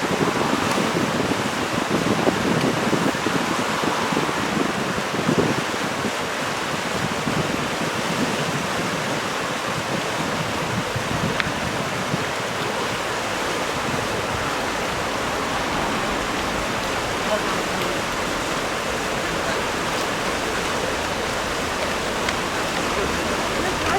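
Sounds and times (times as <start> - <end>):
steady rain hiss: 0.0 - 23.9
wind rumble on microphone: 0.0 - 23.9.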